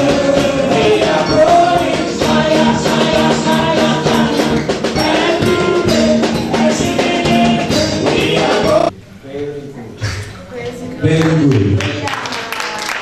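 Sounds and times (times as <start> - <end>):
upbeat music with singing: 0.0 - 8.9.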